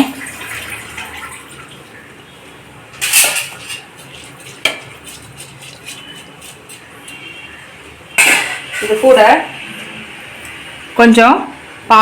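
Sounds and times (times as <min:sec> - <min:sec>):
metal utensil scraping a pot: 0:03.0 - 0:07.3.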